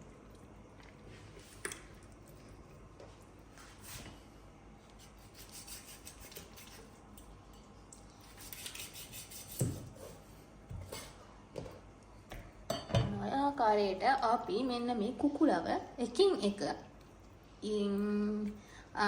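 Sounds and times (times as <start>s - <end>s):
knife clicking and scraping: 8.2s - 9.6s.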